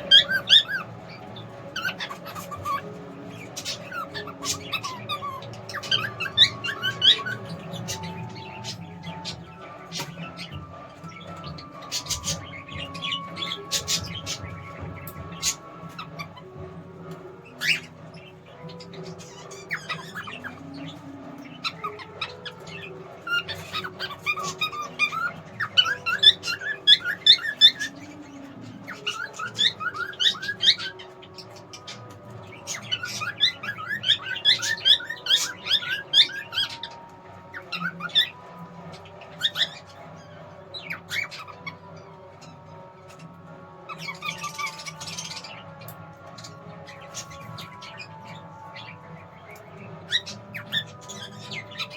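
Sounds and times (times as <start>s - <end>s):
cockatiel whistling and chirping: 0.0s - 51.9s.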